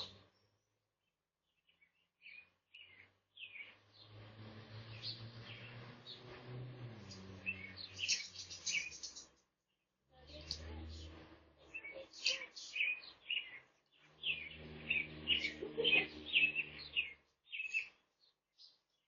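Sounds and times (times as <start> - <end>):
small birds chirping: 0.0 - 19.0
low hum and rushing noise: 3.7 - 9.2, 14.1 - 17.1.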